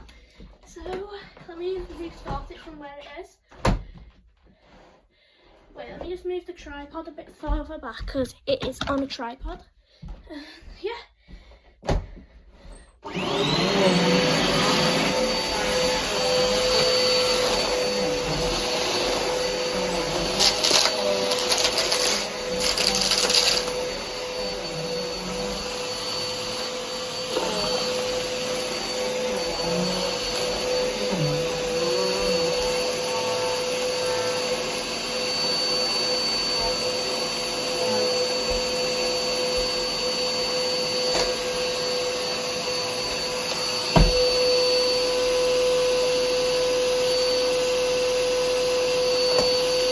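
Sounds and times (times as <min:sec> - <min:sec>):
vacuum cleaner running: 0:11.9 - 0:49.9.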